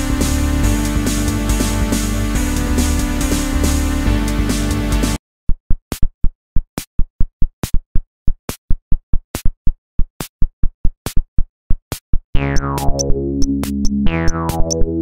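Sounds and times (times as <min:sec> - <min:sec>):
drum machine beat: 0:00.0 - 0:05.2, 0:12.4 - 0:15.0
sustained synthesizer chords: 0:12.4 - 0:15.0.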